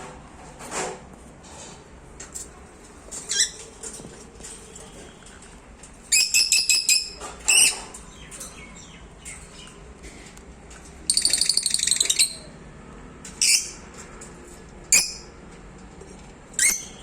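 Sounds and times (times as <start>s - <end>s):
bird chirping: 6.1s - 9.8s, 11.1s - 12.5s.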